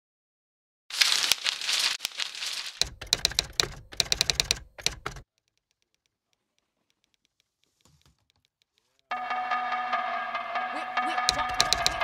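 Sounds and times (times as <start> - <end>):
rapid sharp clicks: 2.0 - 6.2, 11.3 - 12.0.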